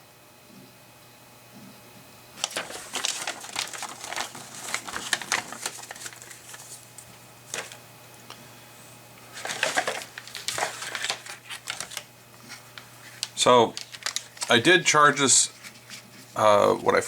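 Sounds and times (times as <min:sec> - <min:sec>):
handling clicks and rustles: 0:09.4 - 0:12.0.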